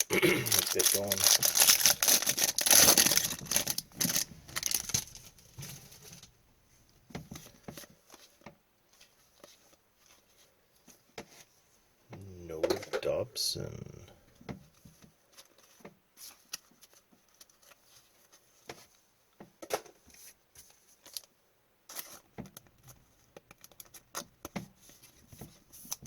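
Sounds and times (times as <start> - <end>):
cards being flipped through: 0.6 - 5.3, 21.9 - 22.3.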